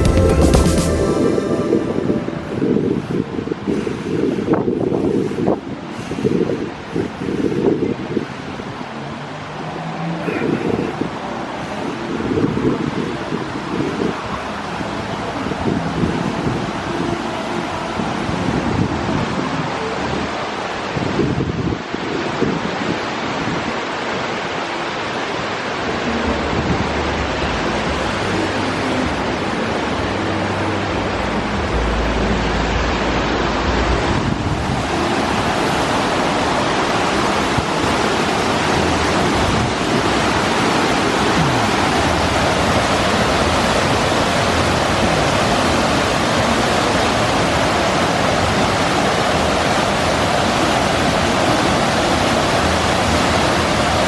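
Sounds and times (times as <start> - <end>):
wind on microphone: 33.6 - 54.0.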